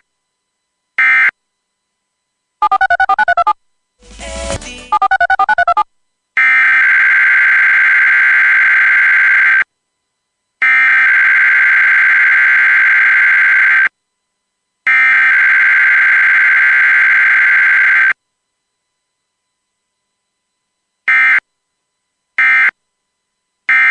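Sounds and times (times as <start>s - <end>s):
electronic sweep: 4.0s - 5.1s.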